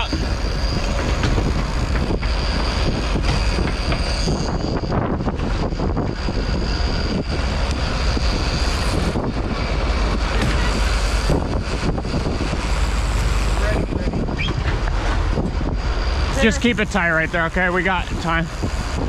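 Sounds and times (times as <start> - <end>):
fishing reel line whining: 0.0 - 14.6
boat engine running: 0.0 - 19.0
wind on microphone: 0.0 - 19.0.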